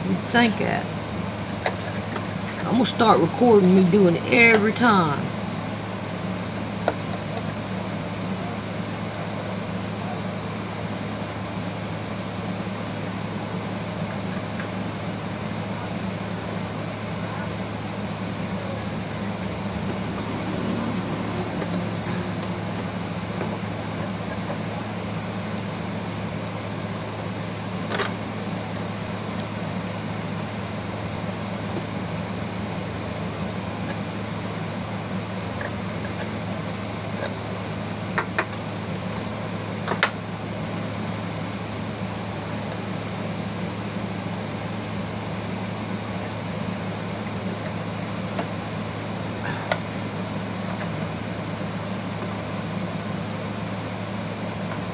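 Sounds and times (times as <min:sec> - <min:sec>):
fan humming: 0:00.0 - 0:54.9.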